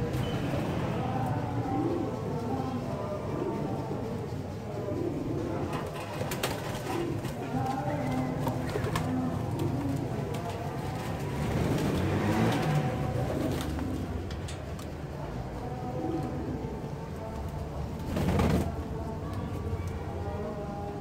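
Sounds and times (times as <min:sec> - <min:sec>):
pigeons cooing: 0:01.3 - 0:17.0.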